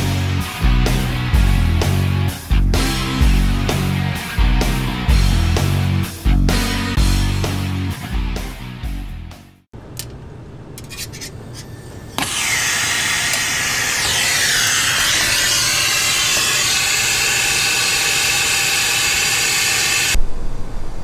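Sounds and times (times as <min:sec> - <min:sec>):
rushing hiss of gas: 0:12.3 - 0:20.2.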